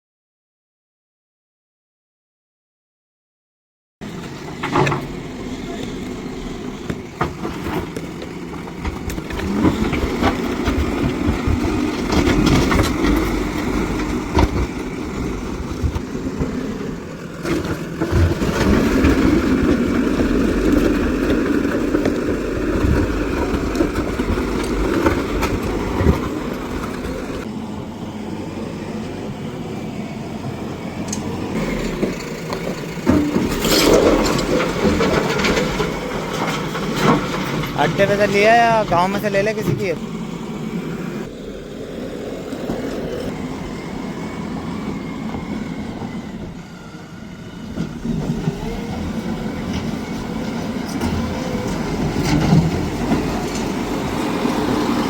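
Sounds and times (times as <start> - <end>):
diesel engine working: 4.0 - 55.0
knocks and clanks: 4.2 - 16.8, 31.6 - 40.1.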